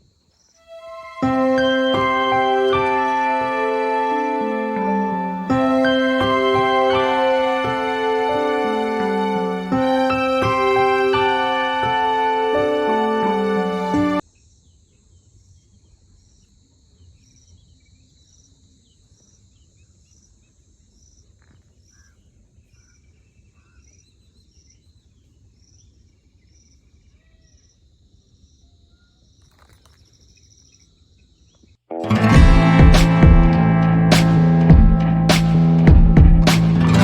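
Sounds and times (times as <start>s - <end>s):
insects droning and chirping: 14.2s - 31.7s.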